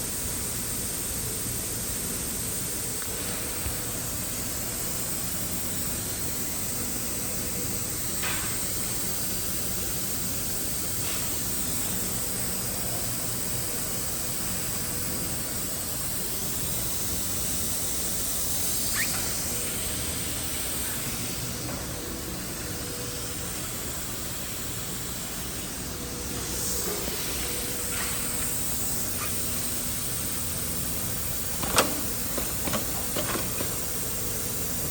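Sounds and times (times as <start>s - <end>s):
industrial sewing machine running: 31.4s - 34.3s.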